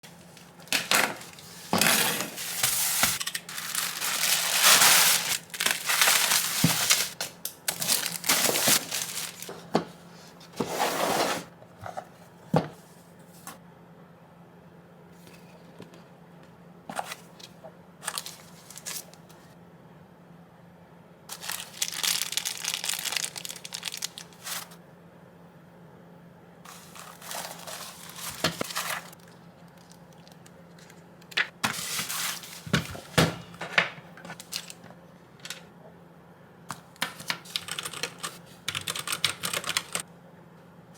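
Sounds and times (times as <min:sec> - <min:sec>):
packaging being torn and crumpled: 0:02.3 - 0:09.6, 0:21.3 - 0:24.8, 0:26.7 - 0:31.0.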